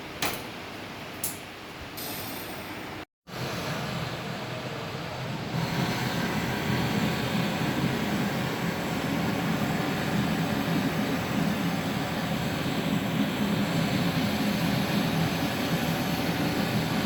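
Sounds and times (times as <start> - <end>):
machine humming with hiss: 3.3 - 17.0.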